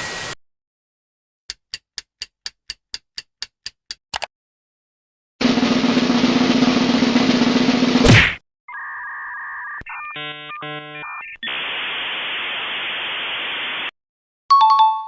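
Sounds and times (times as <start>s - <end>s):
drum roll: 5.4s - 8.2s.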